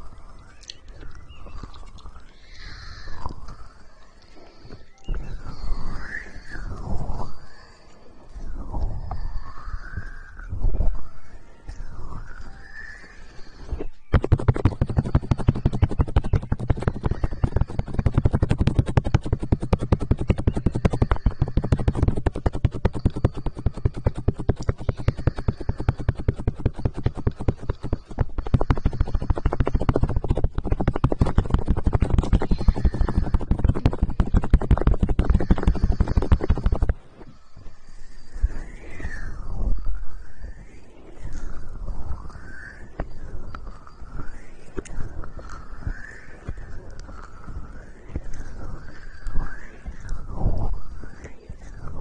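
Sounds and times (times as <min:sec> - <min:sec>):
scratching on microphone: 0:13.6 - 0:37.4, 0:44.1 - 0:52.0.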